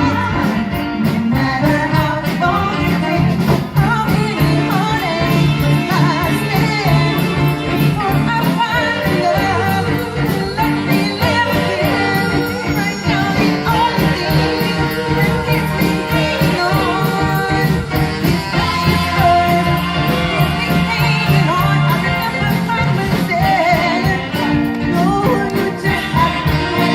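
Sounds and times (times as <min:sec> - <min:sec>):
band with steady drum beat: 0:00.0 - 0:26.9
person singing soul music: 0:00.0 - 0:26.9.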